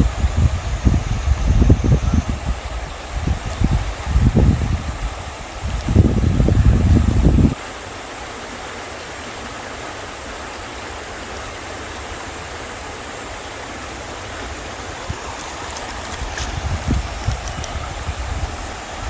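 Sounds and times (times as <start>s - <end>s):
wind bumps on microphone: 0.0s - 7.6s, 14.4s - 19.0s
river water flowing: 7.5s - 19.0s.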